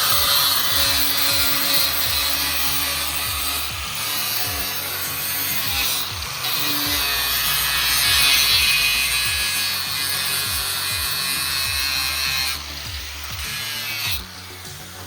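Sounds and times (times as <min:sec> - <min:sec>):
background music with low beat: 0:00.0 - 0:15.0
power tool high-pitched whine: 0:00.0 - 0:15.0.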